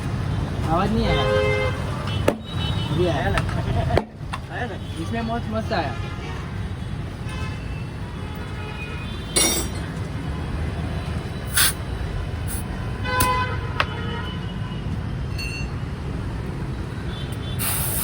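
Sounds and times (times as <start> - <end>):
traffic rumble: 0.0 - 18.0
short sharp hisses: 11.5 - 11.8, 17.5 - 18.0.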